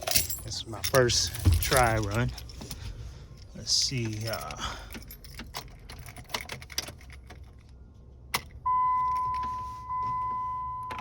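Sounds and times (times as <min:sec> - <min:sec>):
keys jingling: 0:00.0 - 0:07.6
dashboard warning chime beeping: 0:08.6 - 0:11.0.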